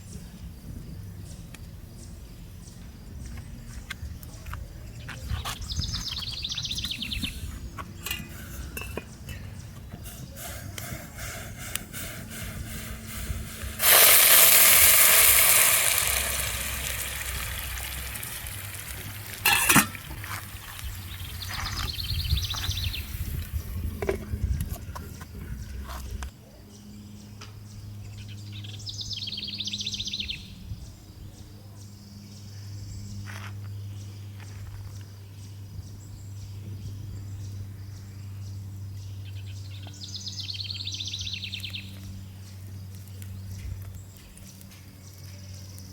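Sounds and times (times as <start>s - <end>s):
water pouring with hiss: 10.1s - 21.9s.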